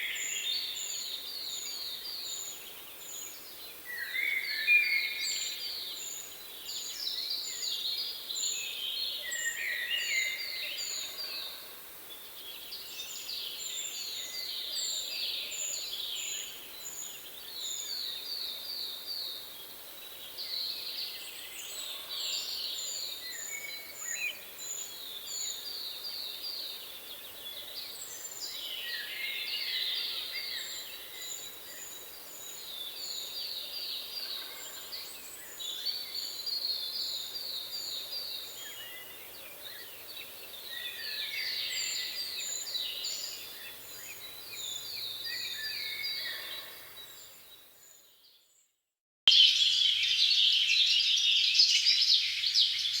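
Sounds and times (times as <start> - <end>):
songbirds singing: 0.0 - 48.7.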